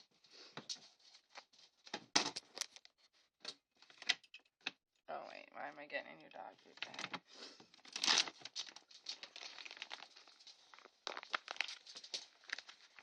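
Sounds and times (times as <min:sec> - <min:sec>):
food bag crinkling and rustling: 0:07.8 - 0:13.0.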